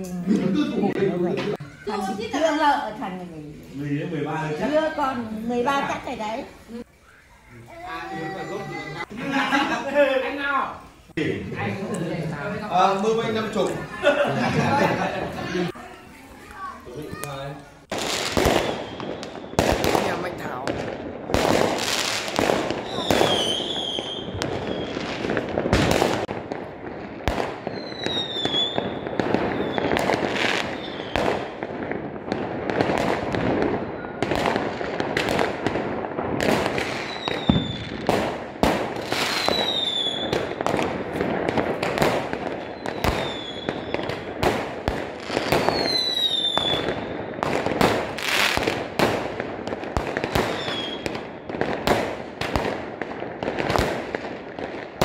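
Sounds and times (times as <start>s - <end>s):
fireworks crackling: 0.2s - 55.0s
fireworks bangs: 0.6s - 55.0s
falling whistles: 6.9s - 7.5s, 18.5s - 19.6s, 27.7s - 29.0s, 29.6s - 30.0s, 30.7s - 31.2s, 42.6s - 44.1s.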